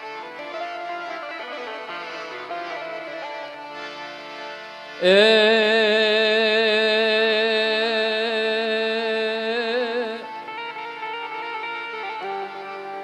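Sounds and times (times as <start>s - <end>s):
instrumental accompaniment: 0.0s - 13.0s
person singing with vibrato: 5.0s - 10.5s.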